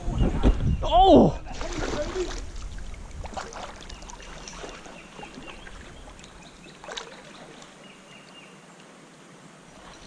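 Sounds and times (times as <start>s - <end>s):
water sloshing around kayak: 1.4s - 8.5s, 9.7s - 10.0s.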